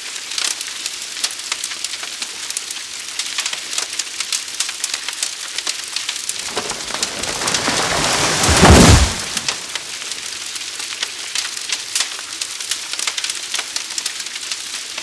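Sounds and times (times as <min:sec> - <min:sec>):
fire crackling and popping: 0:06.5 - 0:09.8.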